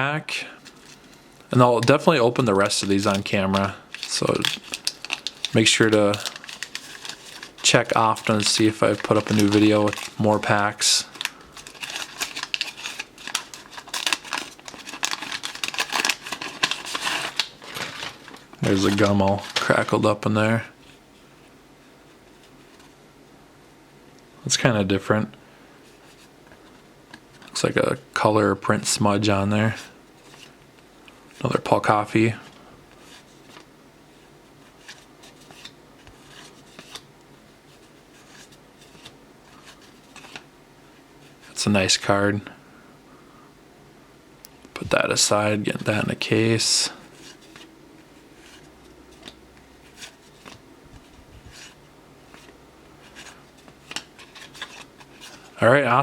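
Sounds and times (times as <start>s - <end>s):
card scraping: 0.6s - 20.1s
cards rustling and flipping: 0.6s - 20.6s, 31.3s - 37.1s, 37.7s - 40.5s, 44.9s - 56.0s
wax paper tearing and crinkling: 1.6s - 20.2s.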